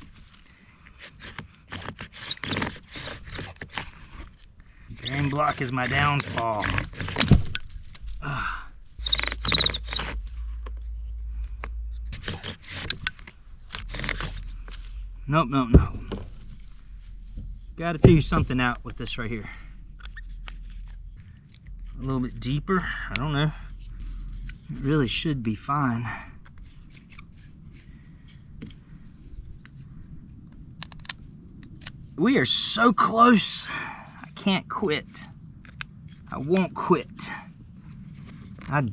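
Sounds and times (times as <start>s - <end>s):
bow drill spindle scraping: 0.0s - 8.2s, 8.8s - 17.8s, 19.0s - 28.8s
pocket knife carving wood: 0.0s - 8.2s, 8.9s - 10.9s, 11.5s - 15.0s.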